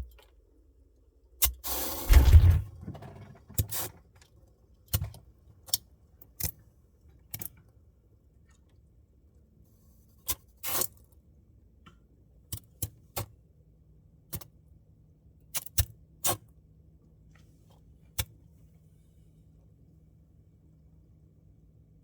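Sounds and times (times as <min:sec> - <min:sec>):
short crackle: 0:02.0 - 0:02.8.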